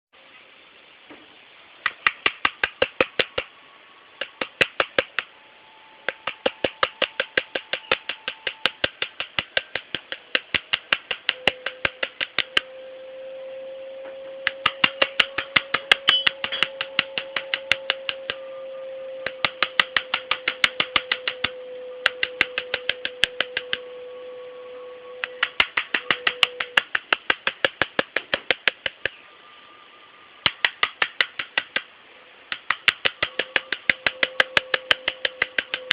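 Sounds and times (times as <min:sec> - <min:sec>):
steady hum-like tone: 0:00.2 - 0:35.9
bird making rapid sharp clicks: 0:01.8 - 0:03.5, 0:04.2 - 0:05.3, 0:06.0 - 0:12.7, 0:14.4 - 0:18.4, 0:19.2 - 0:23.8, 0:25.2 - 0:29.2, 0:30.4 - 0:31.9, 0:32.5 - 0:35.9.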